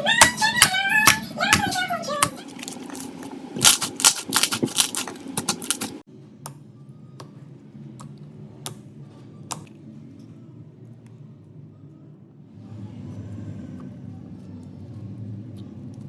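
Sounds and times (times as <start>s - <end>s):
slime crackling and popping: 2.3s - 6.0s.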